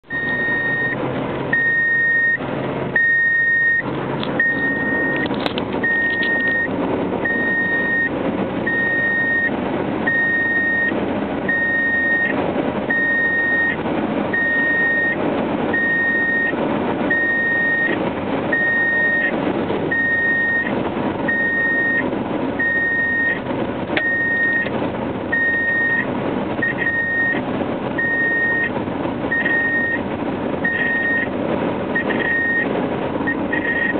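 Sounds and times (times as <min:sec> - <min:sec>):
road and engine noise: 0:00.0 - 0:33.9
dashboard warning buzzer beeping: 0:04.4 - 0:06.7, 0:33.3 - 0:33.9.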